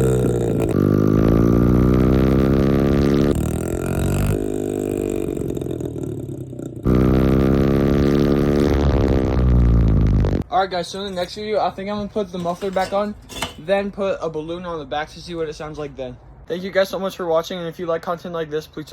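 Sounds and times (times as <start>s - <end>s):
dirt bike engine revving: 0.0s - 10.4s.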